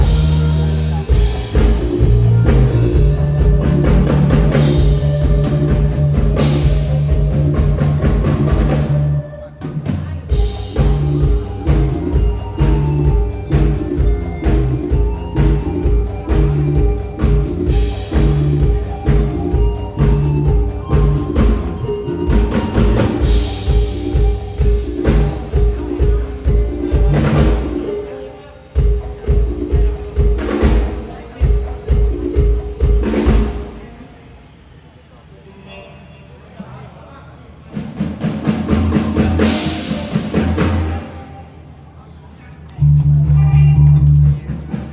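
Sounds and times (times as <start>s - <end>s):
bass line: 0.0s - 27.9s, 42.7s - 44.8s
band music with drum beat: 0.0s - 34.1s, 37.5s - 41.7s, 42.8s - 44.9s.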